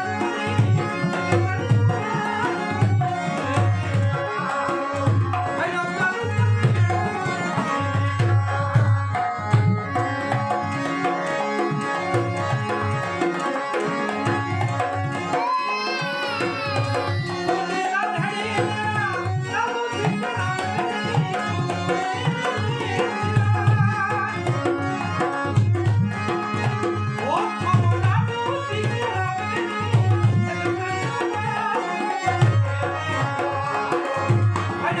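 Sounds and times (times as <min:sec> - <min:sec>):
tabla drumming: 0:00.0 - 0:35.0.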